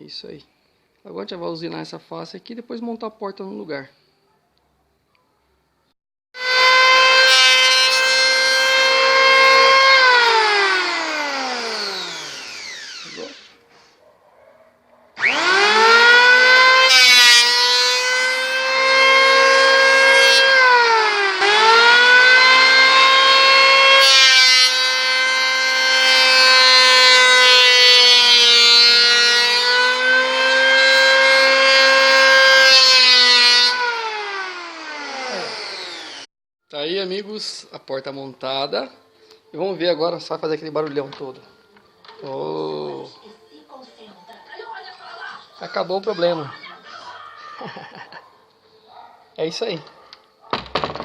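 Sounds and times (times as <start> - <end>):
electric planer whining: 6.4 - 13.6, 15.2 - 36.3.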